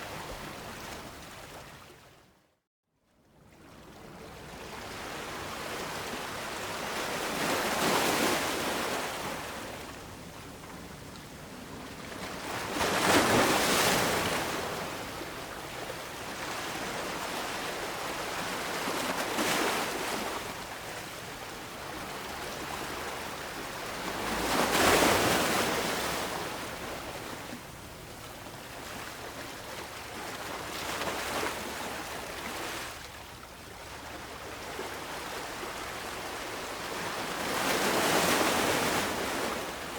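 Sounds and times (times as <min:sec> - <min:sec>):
ocean waves breaking: 0:11.4 - 0:33.4.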